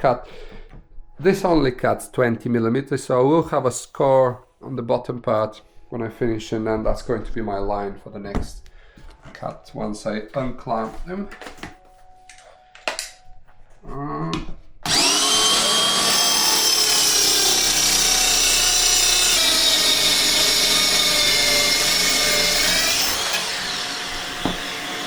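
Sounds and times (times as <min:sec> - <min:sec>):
power saw whining: 0:14.8 - 0:25.0.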